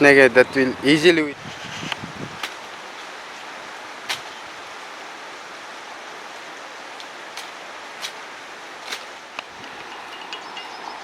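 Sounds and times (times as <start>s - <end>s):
flowing river water: 2.5s - 11.0s.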